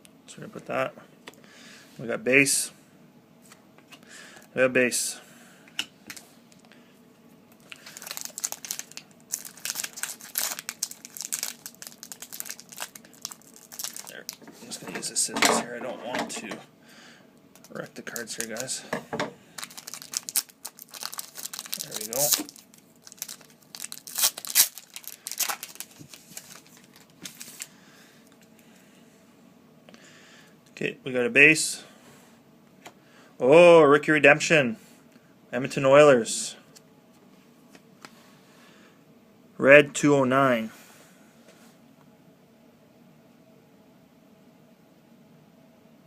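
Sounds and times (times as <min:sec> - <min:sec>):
foil wrapper crinkling: 0:07.6 - 0:14.9, 0:17.6 - 0:18.8, 0:19.5 - 0:27.7
cards rustling: 0:07.6 - 0:15.0, 0:17.6 - 0:18.8, 0:19.6 - 0:27.7.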